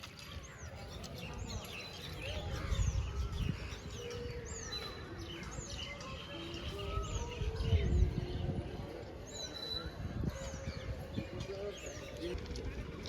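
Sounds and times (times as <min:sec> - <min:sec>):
birds chirping: 0:00.0 - 0:13.0.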